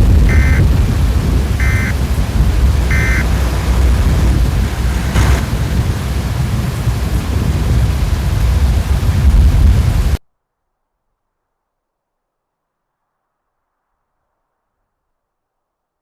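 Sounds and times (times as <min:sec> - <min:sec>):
heavy rain: 0:00.0 - 0:10.2
low thunder rumble: 0:00.0 - 0:10.2
wind: 0:00.0 - 0:10.2
short electronic beeps: 0:00.3 - 0:00.6, 0:01.6 - 0:02.0, 0:02.8 - 0:05.5
brief hiss: 0:02.4 - 0:07.0.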